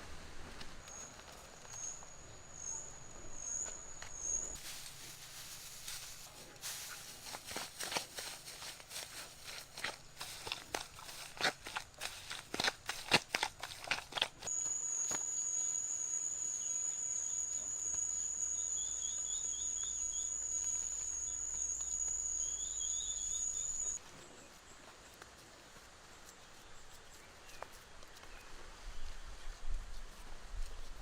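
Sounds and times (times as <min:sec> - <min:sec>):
outdoor background noise: 0:00.0 - 0:31.0
rapid insect chirps: 0:00.8 - 0:06.2, 0:13.8 - 0:24.0
insect trill: 0:00.9 - 0:06.0, 0:14.4 - 0:24.0.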